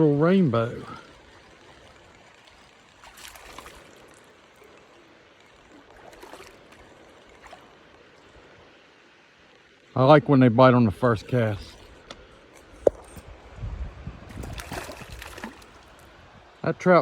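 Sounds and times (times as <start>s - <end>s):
river trickling over rocks: 0.0s - 13.7s, 14.3s - 17.0s
faint splashy rustling: 0.5s - 8.4s, 14.3s - 16.2s.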